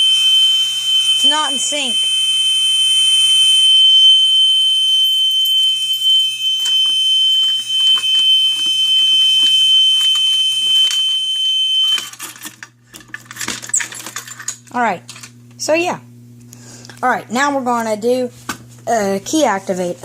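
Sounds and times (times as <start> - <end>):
fire alarm horn high tone: 0.0 - 12.2
clicks and rattles: 11.9 - 15.3.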